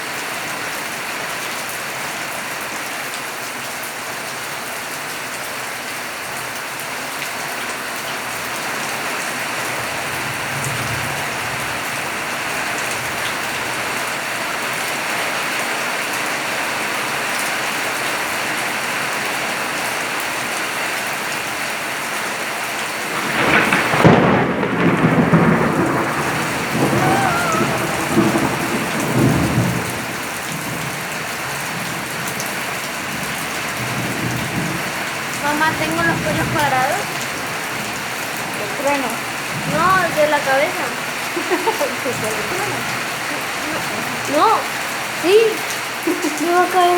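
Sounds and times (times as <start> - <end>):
heavy rain falling: 0.0 - 46.9
rumbling thunder: 9.5 - 14.0, 23.0 - 45.2.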